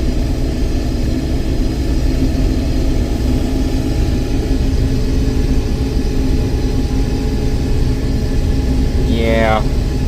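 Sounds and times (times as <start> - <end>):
combine harvester engine drone: 0.0 - 10.0.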